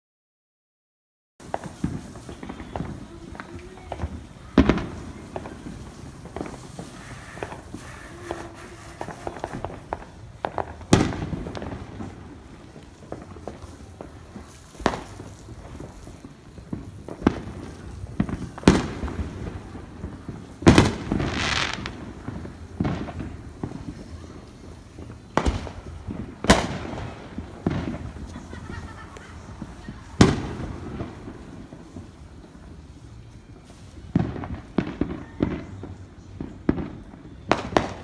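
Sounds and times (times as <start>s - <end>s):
fireworks bangs: 1.4s - 38.0s
fireworks crackling hiss: 1.4s - 38.0s
fireworks popping: 1.4s - 38.0s.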